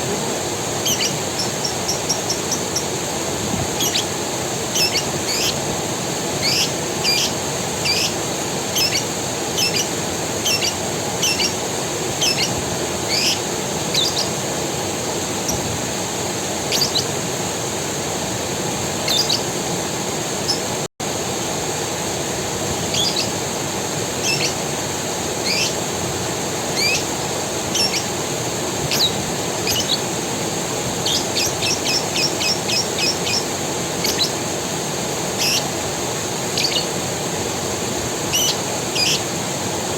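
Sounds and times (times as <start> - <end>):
forest creek rushing: 0.0 - 39.9
high insect hum: 0.0 - 39.9
small bird chirping: 0.8 - 2.9, 3.8 - 4.1, 4.7 - 5.6, 6.4 - 11.6, 12.2 - 14.4, 16.7 - 17.1, 19.0 - 19.5, 22.8 - 23.4, 24.2 - 24.6, 25.4 - 25.8, 26.8 - 28.2, 28.9 - 30.1, 31.0 - 34.4, 35.4 - 35.7, 36.5 - 37.0, 38.3 - 39.3.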